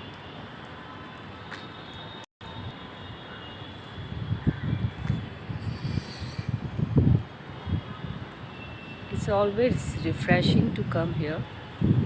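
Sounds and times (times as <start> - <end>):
wind buffeting microphone: 3.9 - 12.0.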